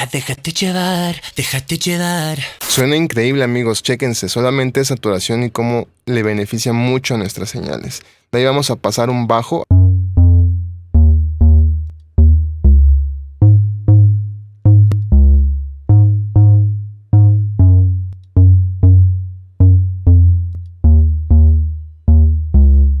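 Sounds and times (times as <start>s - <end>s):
plucked bass line: 9.7s - 23.0s.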